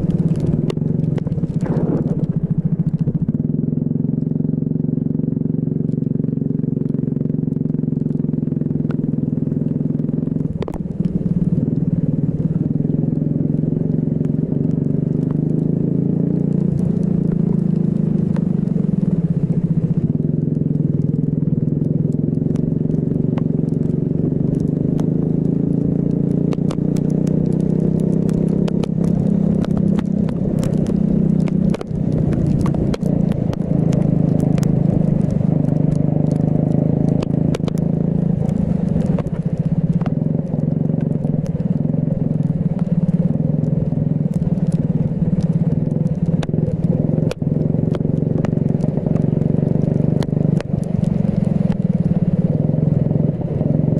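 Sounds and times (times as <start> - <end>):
sharp clicks and crackles: 0.0 - 53.9.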